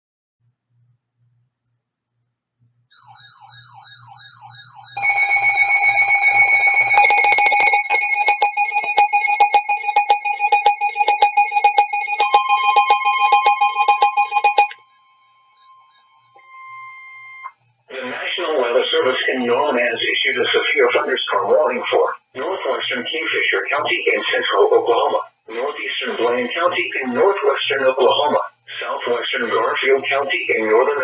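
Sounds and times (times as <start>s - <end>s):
faint warbling siren-like alarm: 2.9s - 17.5s
loud pulsing alert tones: 5.0s - 14.8s.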